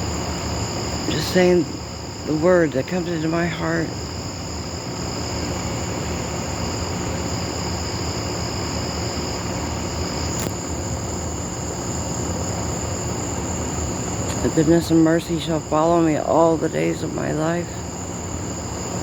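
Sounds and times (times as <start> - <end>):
insects trilling: 0.0 - 19.0
faint click: 10.4 - 10.6.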